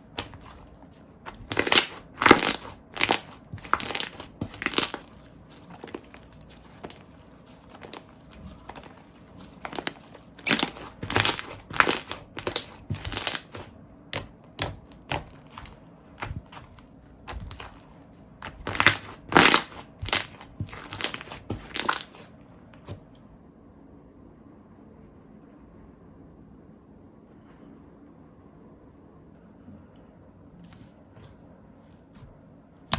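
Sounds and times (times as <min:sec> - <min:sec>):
slime squished by hand: 0:00.0 - 0:23.0.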